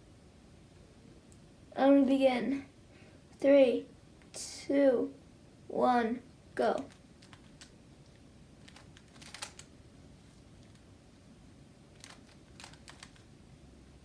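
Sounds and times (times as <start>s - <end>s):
puzzle cube layers clicking: 6.7s - 7.8s, 8.6s - 9.7s, 12.0s - 13.3s.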